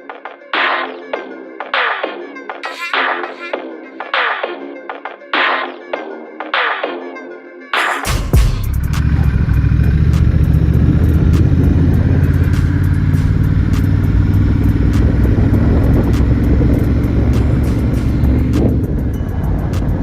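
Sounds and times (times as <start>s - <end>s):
motorcycle engine rumbling: 8.4s - 20.0s.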